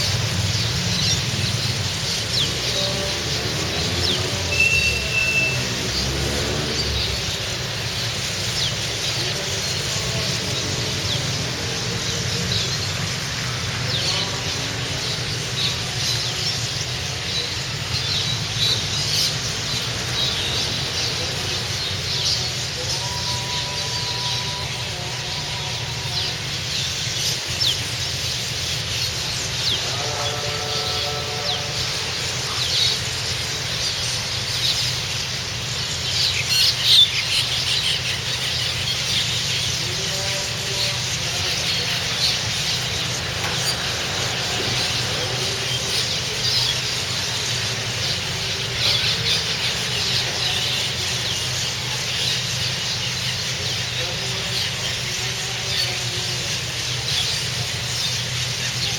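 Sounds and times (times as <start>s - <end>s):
small birds chattering: 0.0s - 58.9s.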